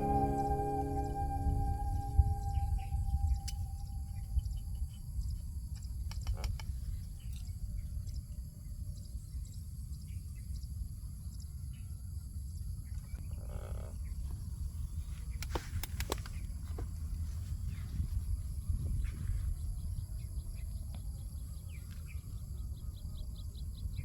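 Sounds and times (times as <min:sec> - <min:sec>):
wind rumble on microphone: 0:14.0 - 0:24.0.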